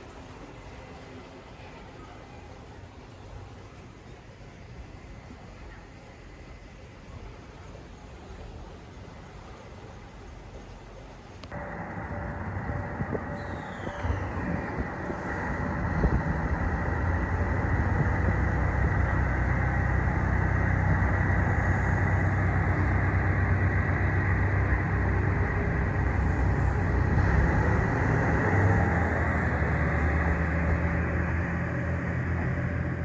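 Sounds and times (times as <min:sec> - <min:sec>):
diesel train rumbling past: 0:11.4 - 0:33.0.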